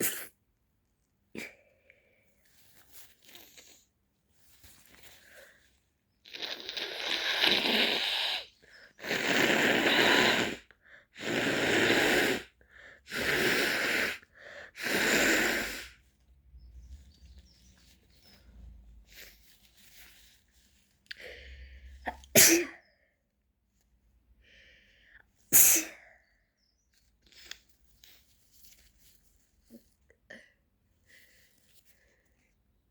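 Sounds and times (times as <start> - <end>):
girl sneezing: 0.0 - 0.4, 22.1 - 22.8, 25.5 - 26.1.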